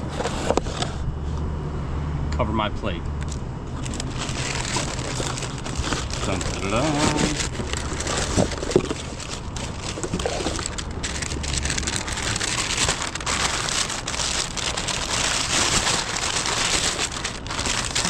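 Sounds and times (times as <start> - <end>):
plastic packaging crinkling: 3.8 - 18.0.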